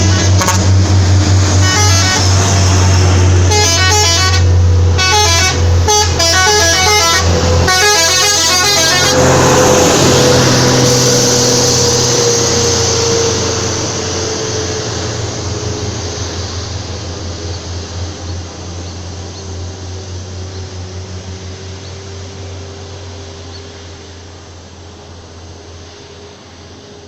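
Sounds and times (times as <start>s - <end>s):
bus horn playing musical notes: 0.0s - 13.8s
diesel engine hum: 0.0s - 27.0s.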